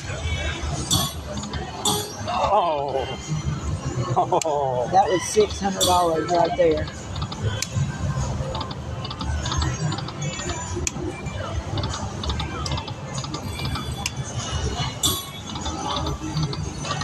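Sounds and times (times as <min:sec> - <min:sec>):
machine sounds: 0:00.0 - 0:03.3, 0:05.1 - 0:17.0
murmur of voices: 0:00.0 - 0:17.0
slot machine chiming and ticking: 0:00.8 - 0:02.5, 0:11.6 - 0:17.0.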